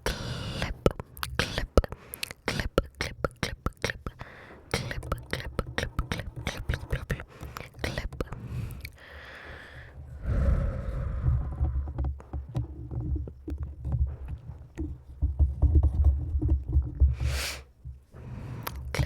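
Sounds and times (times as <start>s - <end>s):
breathy hiss: 0.0s - 3.2s, 3.9s - 5.5s, 6.2s - 11.8s
wet mouth clicks and smacks: 0.0s - 9.0s
low rumble: 10.1s - 12.0s.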